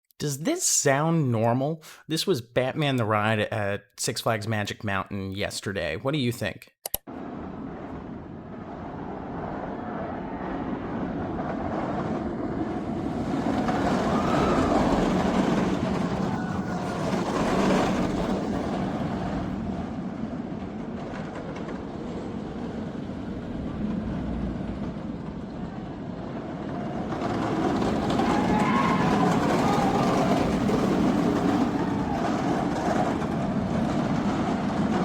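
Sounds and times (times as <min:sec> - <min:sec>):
person speaking: 0:00.1 - 0:06.8
roller coaster rumbling and rattling: 0:07.1 - 0:35.0.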